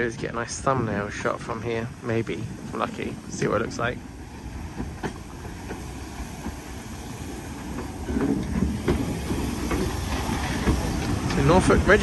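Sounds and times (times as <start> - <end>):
train rumble: 0.0 - 12.0
wheels clicking over rail joints: 0.0 - 12.0.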